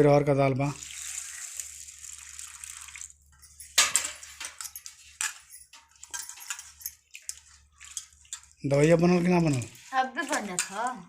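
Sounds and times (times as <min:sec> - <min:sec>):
water pouring: 0:00.6 - 0:04.4, 0:06.0 - 0:10.1
lentils washed by hand in water: 0:00.7 - 0:11.0.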